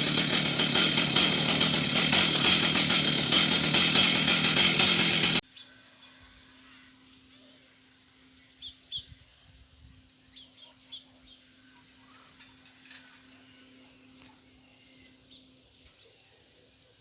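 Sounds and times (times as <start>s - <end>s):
faint small bird chirps: 8.3s - 17.0s.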